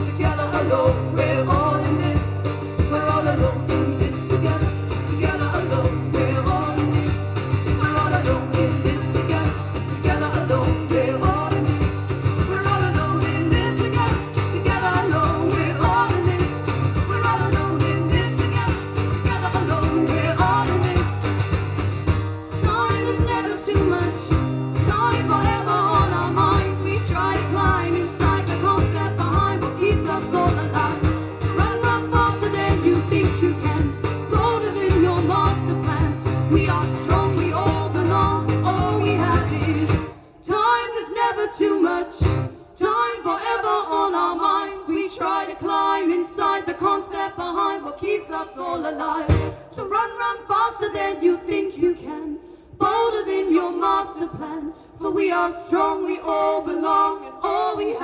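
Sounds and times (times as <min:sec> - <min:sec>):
voices singing in harmony: 0:00.0 - 0:21.9, 0:22.5 - 0:58.0
live band playing: 0:00.0 - 0:40.2.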